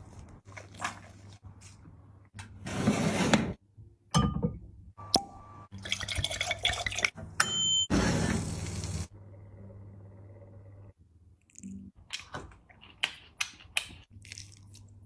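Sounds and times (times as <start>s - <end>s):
liquid sloshing and pouring: 5.7s - 7.2s.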